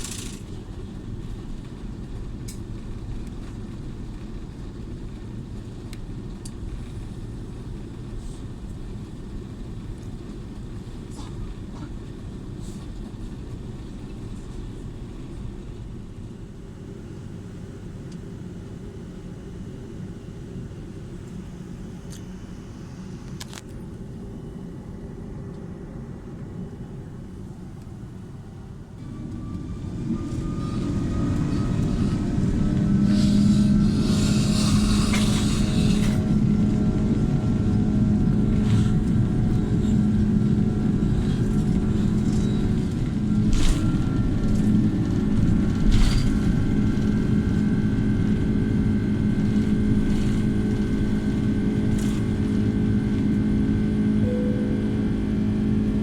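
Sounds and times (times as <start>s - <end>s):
airplane cabin rumble: 0.0s - 56.0s
jet engines spooling up: 29.0s - 39.5s.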